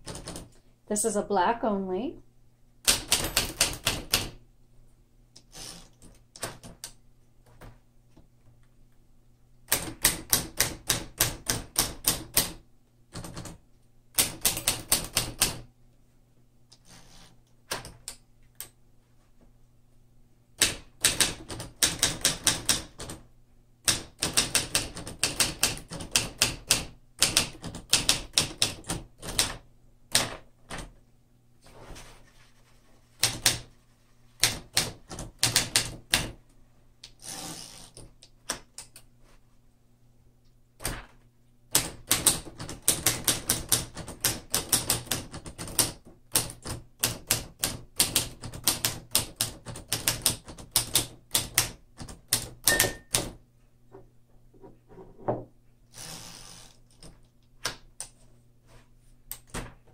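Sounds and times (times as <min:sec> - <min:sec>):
manual typewriter keystrokes: 0:00.0 - 0:00.6, 0:02.8 - 0:04.4, 0:09.7 - 0:15.7, 0:20.6 - 0:23.2, 0:23.8 - 0:31.0, 0:33.2 - 0:33.7, 0:34.4 - 0:36.4, 0:41.7 - 0:53.4.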